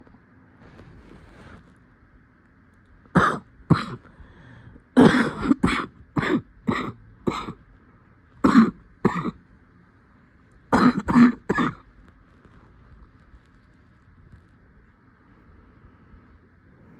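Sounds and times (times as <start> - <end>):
person coughing: 3.2 - 4.1, 5.0 - 7.6, 8.4 - 9.4, 10.7 - 11.9.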